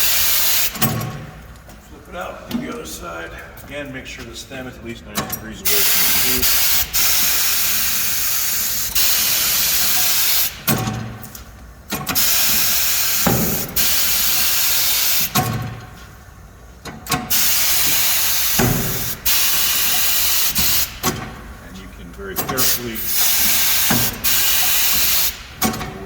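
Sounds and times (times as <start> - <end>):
compressed air hissing: 0.0 - 1.1, 5.6 - 11.2, 12.1 - 15.7, 17.2 - 21.5, 22.5 - 25.8.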